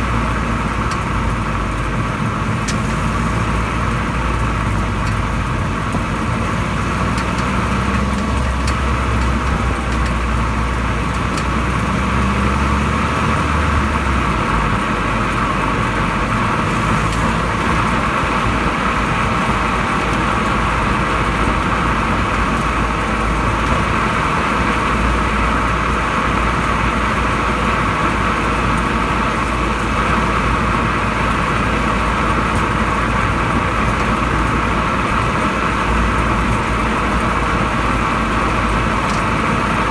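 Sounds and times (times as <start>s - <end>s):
car road noise: 0.0s - 39.9s
rear suspension rattling: 0.0s - 39.9s.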